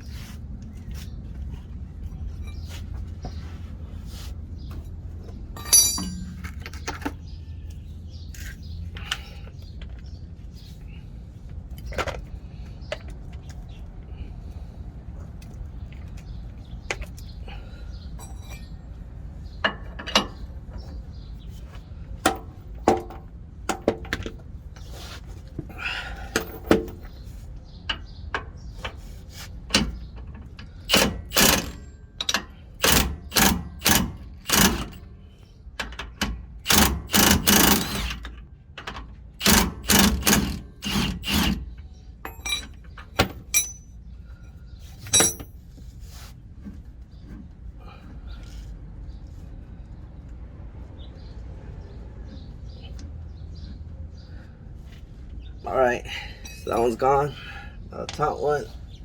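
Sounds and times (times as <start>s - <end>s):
metal clicks and knocks: 5.6s - 7.2s
socket wrench ratcheting: 30.9s - 31.8s, 32.8s - 35.1s, 36.6s - 38.4s, 39.4s - 41.7s.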